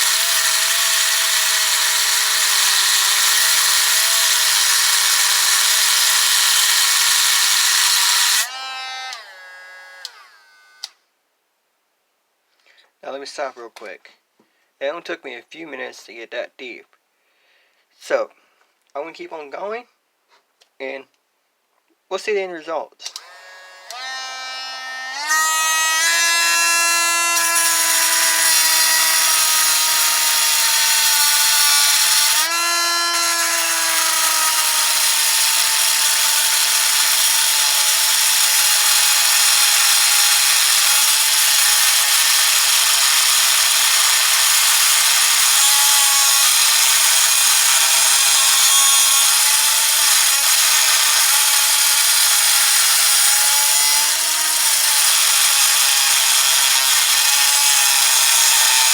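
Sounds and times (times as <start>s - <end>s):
cutting wheel grinding metal: 0.0s - 10.9s, 23.1s - 58.9s
drill motor whine: 0.0s - 10.9s, 23.1s - 58.9s.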